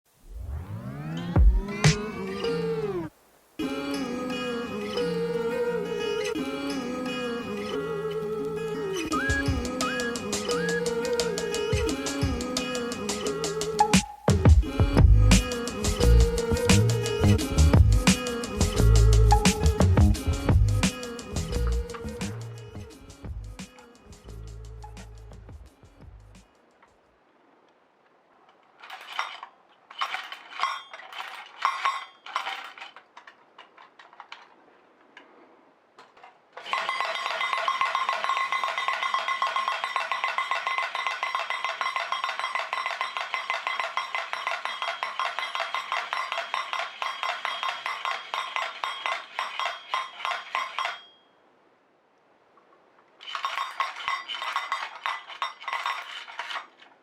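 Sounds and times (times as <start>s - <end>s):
toy robot drumming: 1.1s - 2.4s, 9.1s - 26.4s, 30.0s - 33.0s, 36.6s - 51.1s, 53.2s - 56.6s
metallic clicks and clinks: 28.8s - 34.6s, 36.0s - 51.3s, 53.2s - 57.0s.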